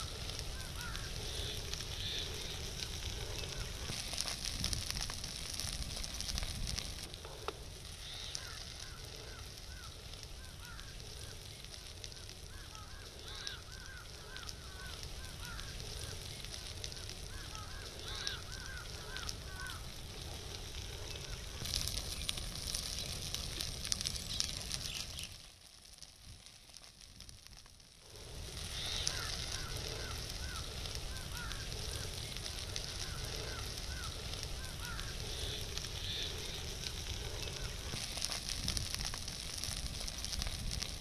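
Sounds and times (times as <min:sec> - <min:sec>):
bird calling: 0:00.0 - 0:03.9, 0:08.0 - 0:11.5, 0:12.1 - 0:16.3, 0:16.9 - 0:23.6, 0:28.7 - 0:38.0
fire crackling: 0:00.0 - 0:41.0.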